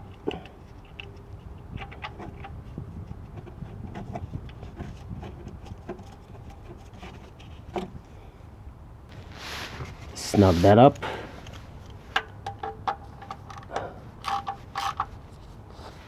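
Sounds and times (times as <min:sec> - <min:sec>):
drain plug clicks and taps: 0:11.4 - 0:15.1.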